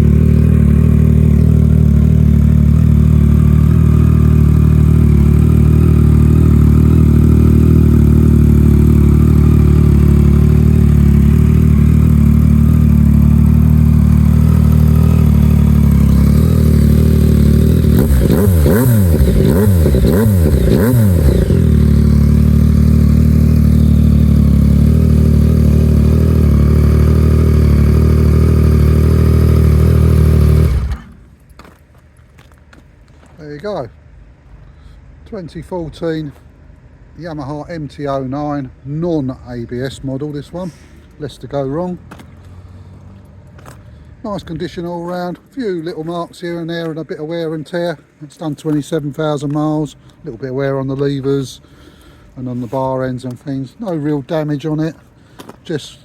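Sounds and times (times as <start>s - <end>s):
motorcycle engine idling and revving: 0.0s - 31.8s, 41.4s - 47.8s.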